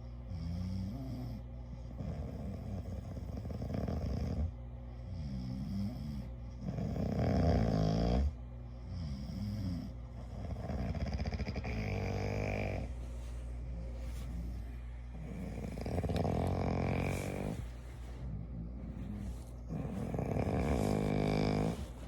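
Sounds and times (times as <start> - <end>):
person snoring: 15.2 - 17.7, 19.1 - 22.0.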